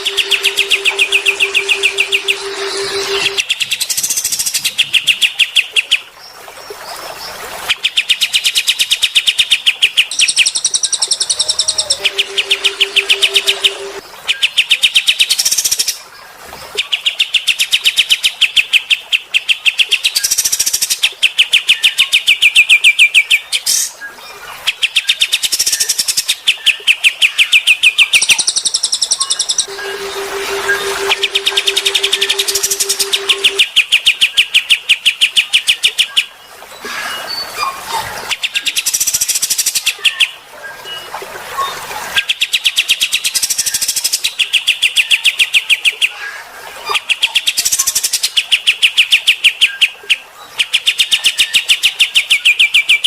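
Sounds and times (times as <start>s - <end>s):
steady low tone: 0.0s - 3.4s, 11.7s - 14.0s, 29.7s - 33.6s
songbird trilling: 0.0s - 3.7s.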